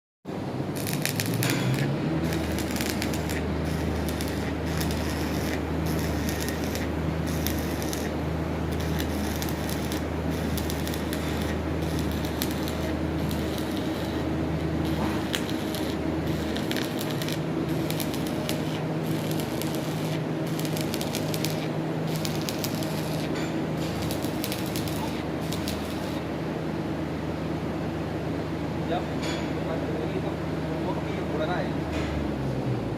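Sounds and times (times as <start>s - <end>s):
low hum: 0.4s - 27.0s
welding arc crackling and sizzling: 0.6s - 26.3s.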